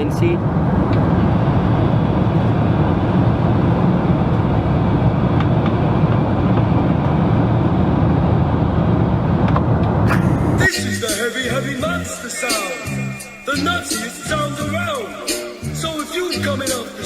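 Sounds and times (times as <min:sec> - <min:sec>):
airliner cabin engine and air noise: 0:00.0 - 0:13.6.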